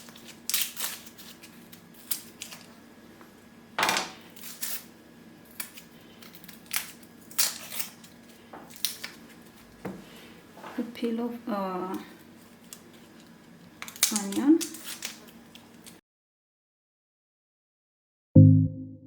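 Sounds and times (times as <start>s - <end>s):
onion skin crackling: 0.0s - 2.8s, 4.2s - 9.8s, 11.9s - 16.0s.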